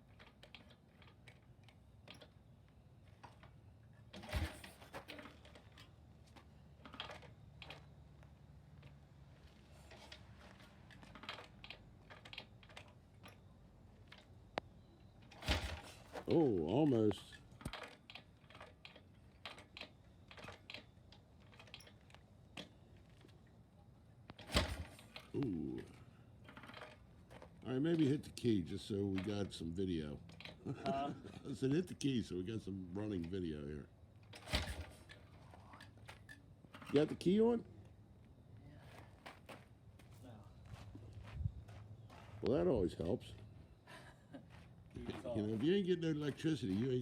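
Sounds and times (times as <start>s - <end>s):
kick starter clicking and clanking: 0.0s - 2.5s, 3.1s - 8.0s, 9.8s - 14.4s, 15.2s - 16.5s, 17.1s - 23.2s, 24.3s - 31.0s, 34.2s - 37.5s.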